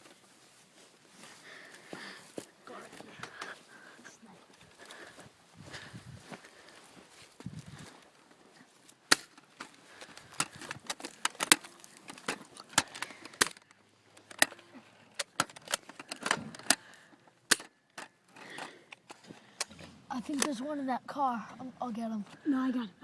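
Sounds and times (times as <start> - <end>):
toy blaster clicks and snaps: 10.4 - 14.6, 15.2 - 16.8, 17.5 - 18.1.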